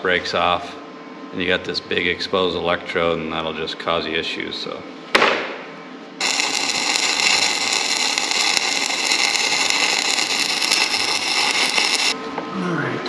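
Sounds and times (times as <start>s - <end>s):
welding arc crackling: 6.2s - 12.2s.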